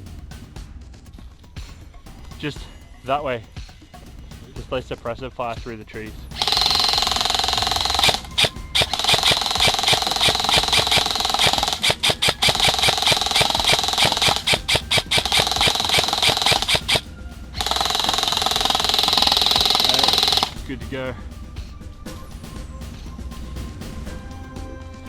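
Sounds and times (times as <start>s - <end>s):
airsoft guns firing full-auto: 6.4s - 17.0s, 17.6s - 20.6s.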